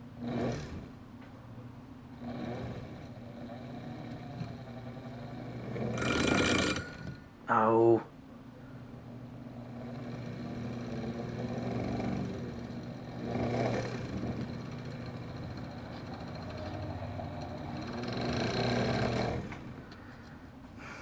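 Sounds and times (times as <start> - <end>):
motor humming: 2.1 - 7.3, 9.5 - 20.2.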